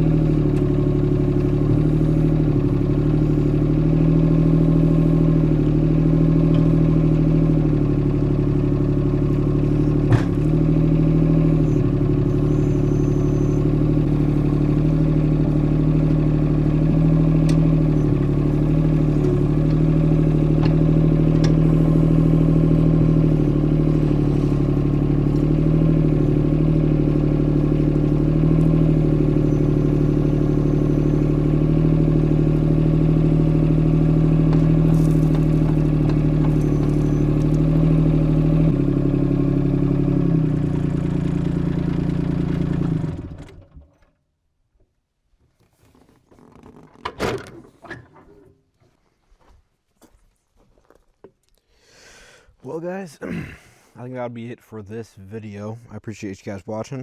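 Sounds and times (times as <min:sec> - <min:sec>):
diesel excavator engine running: 0:00.0 - 0:44.0.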